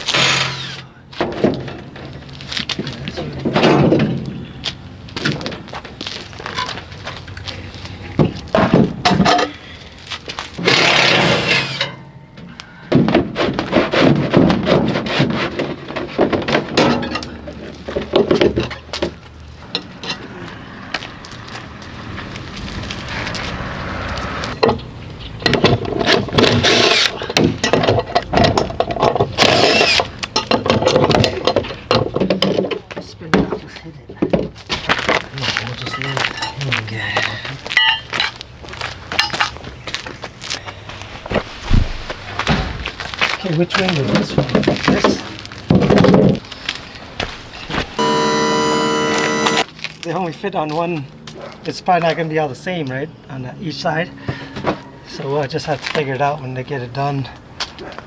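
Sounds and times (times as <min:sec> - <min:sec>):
metal parts clinking and clanking: 0:09.0 - 0:12.1, 0:16.8 - 0:18.9, 0:25.4 - 0:32.2, 0:37.8 - 0:38.4.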